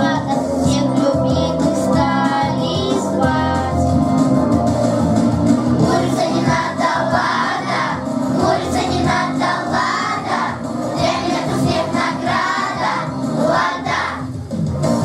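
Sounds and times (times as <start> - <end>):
backing music track: 0.0 - 15.0
children singing together: 5.8 - 14.3.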